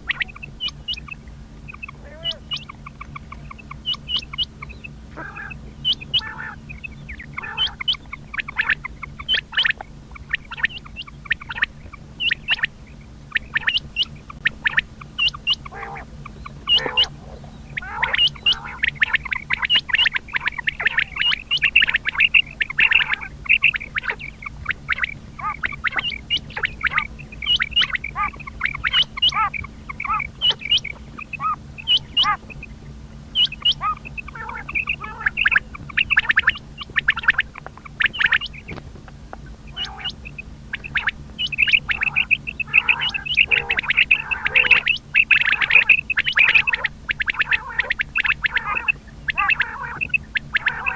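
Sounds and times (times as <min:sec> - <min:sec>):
quail calling: 0:00.0 - 0:50.9
steady low hum: 0:00.0 - 0:50.9.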